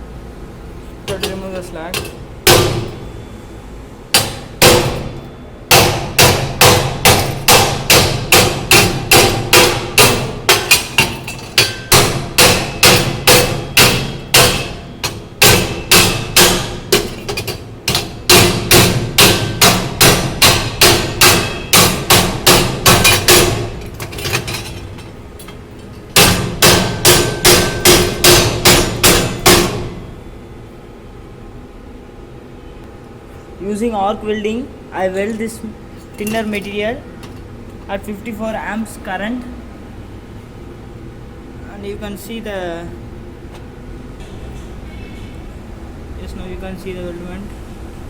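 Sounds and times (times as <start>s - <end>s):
hammer striking metal: 1.1s - 3.2s, 4.1s - 30.1s.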